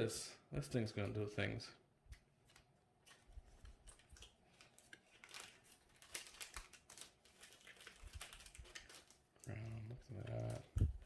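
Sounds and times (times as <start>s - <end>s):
trading cards rustling and clicking: 2.1s - 9.2s.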